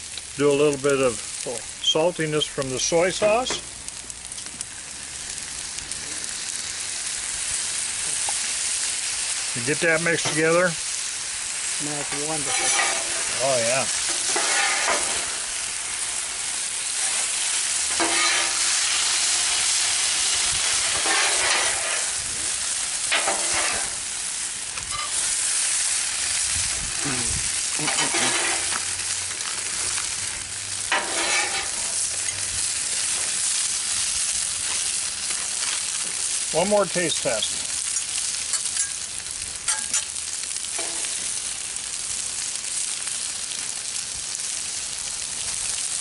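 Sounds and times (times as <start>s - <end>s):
stir-fry sizzling on a griddle: 0.0s - 46.0s
spatula scraping griddle: 12.0s - 16.3s, 16.9s - 24.0s, 24.8s - 25.6s, 27.0s - 30.0s, 30.8s - 33.4s, 40.8s - 41.2s.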